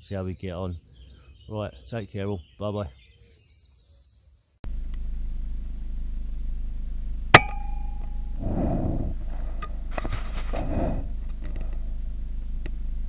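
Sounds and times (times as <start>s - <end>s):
steady low hum: 4.6s - 13.0s
air rifle shot with ringing: 7.3s - 8.4s.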